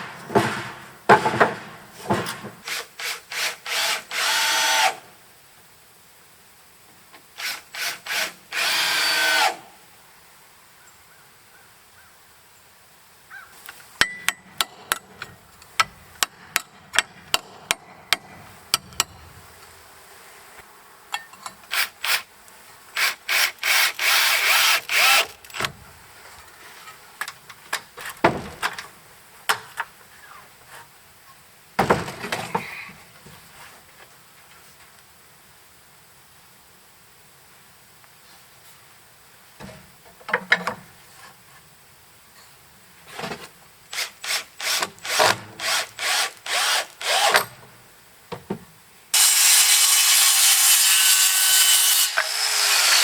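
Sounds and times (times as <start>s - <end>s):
power drill on wood: 2.6s - 5.0s, 7.4s - 9.7s, 23.0s - 25.7s, 43.9s - 47.6s, 49.2s - 53.0s.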